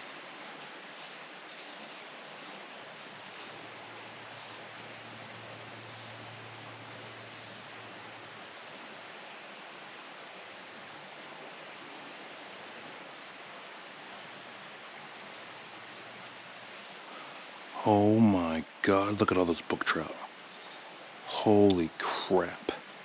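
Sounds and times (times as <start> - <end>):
creek hiss: 0.0 - 23.0
low hum: 2.9 - 8.8.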